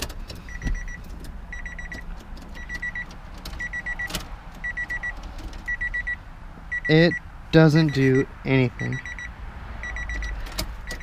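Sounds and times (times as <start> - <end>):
key clicking in ignition: 0.0 - 6.0, 10.2 - 11.0
dashboard warning chime beeping: 0.4 - 11.0.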